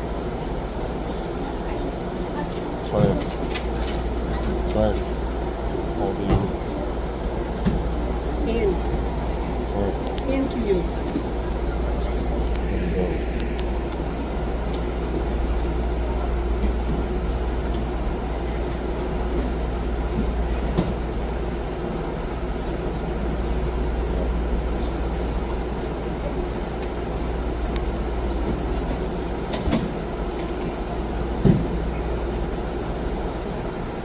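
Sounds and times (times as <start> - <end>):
low room rumble: 0.0 - 34.0.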